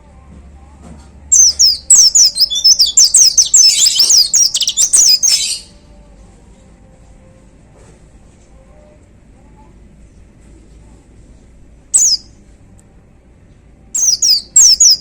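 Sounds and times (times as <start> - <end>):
bird chirping: 1.3 - 5.8, 11.9 - 12.3, 14.0 - 15.0.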